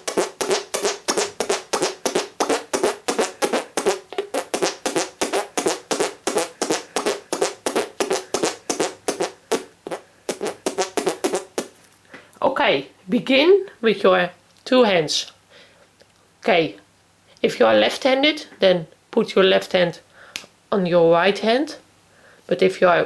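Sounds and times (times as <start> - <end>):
hand fart noises: 0.0 - 12.0.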